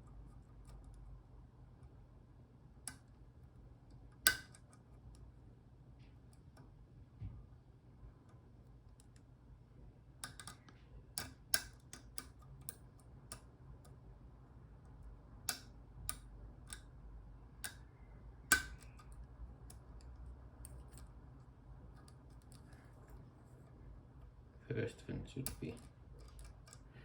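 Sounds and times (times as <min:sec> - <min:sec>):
faint low hum: 0:00.0 - 0:27.0
lock pick clicking in padlock: 0:04.3 - 0:04.7, 0:10.2 - 0:13.4, 0:18.4 - 0:20.0.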